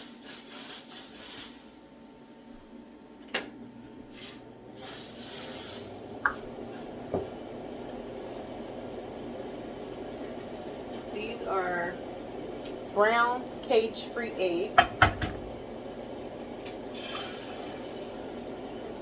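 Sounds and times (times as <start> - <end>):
cooking spray hissing on pan: 0.0 - 2.0, 4.8 - 6.9, 16.9 - 19.0
steady low hum: 1.5 - 19.0.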